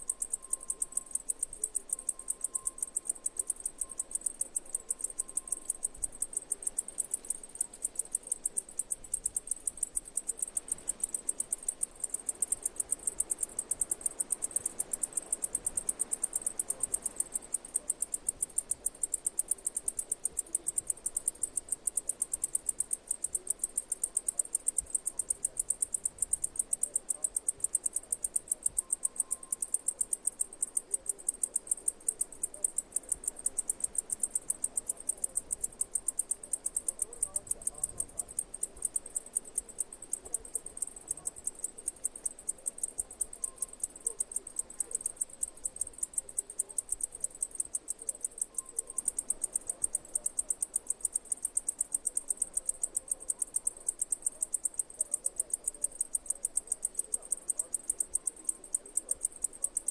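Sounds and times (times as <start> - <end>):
insect chirping: 0.0 - 59.9.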